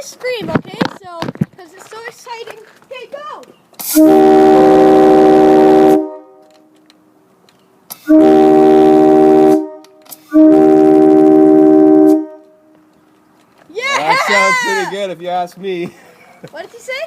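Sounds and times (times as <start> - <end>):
train horn blasts: 3.9 - 6.7, 8.0 - 12.7.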